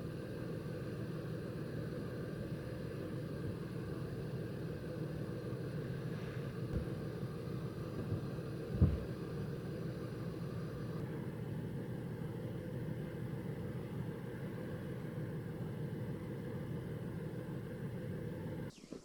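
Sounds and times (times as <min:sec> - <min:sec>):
thump: 0:06.7 - 0:07.0, 0:08.0 - 0:09.2.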